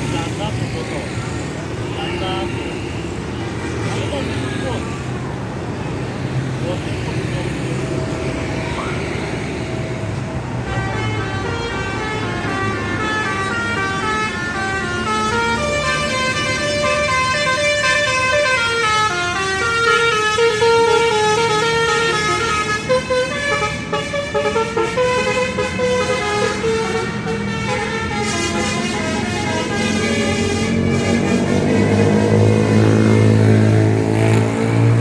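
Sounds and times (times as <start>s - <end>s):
bus engine rumble: 0.0s - 3.3s
multi-tone musical bus horn: 10.6s - 35.0s.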